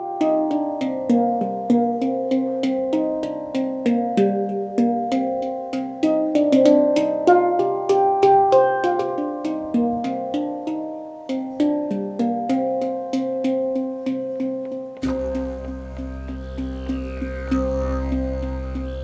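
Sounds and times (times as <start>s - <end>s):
pitched percussion melody: 0.0s - 19.0s
low didgeridoo drone: 15.0s - 19.0s.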